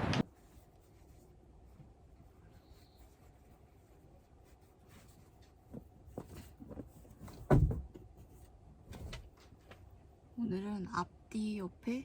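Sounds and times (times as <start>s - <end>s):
soft knocks and thuds: 5.7s - 9.5s.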